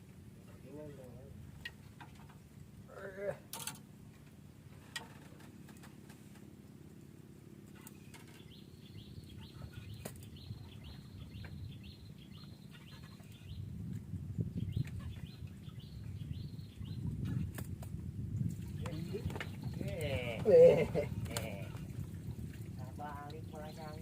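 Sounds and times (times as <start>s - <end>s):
bird chirping: 7.8s - 13.8s, 14.5s - 17.2s.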